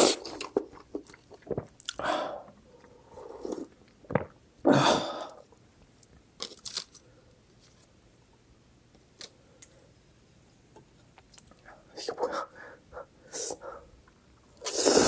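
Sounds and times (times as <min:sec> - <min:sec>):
noisy bite or slurp: 0:14.6 - 0:15.0.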